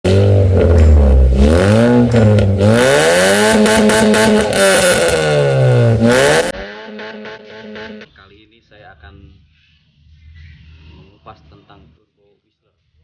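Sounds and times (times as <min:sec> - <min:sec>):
car engine revving: 0:00.0 - 0:08.1.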